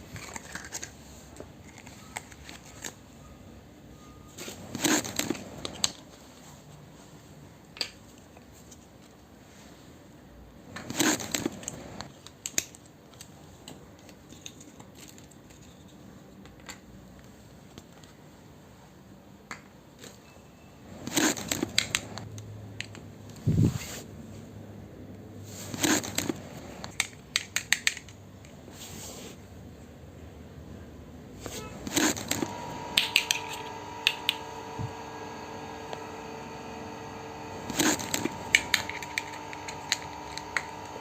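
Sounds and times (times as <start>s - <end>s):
packaging crinkling and scraping: 0.0s - 3.1s, 4.4s - 6.0s, 10.8s - 12.1s, 21.0s - 22.3s, 25.5s - 27.0s, 31.4s - 41.0s
sharp plastic clicks: 10.8s - 14.6s, 25.8s - 28.2s.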